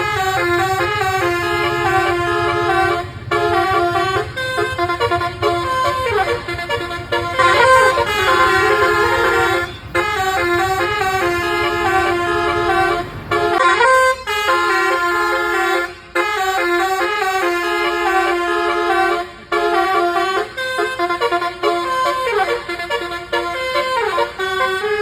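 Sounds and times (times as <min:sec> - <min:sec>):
multi-tone bus horn melody: 0:00.0 - 0:25.0.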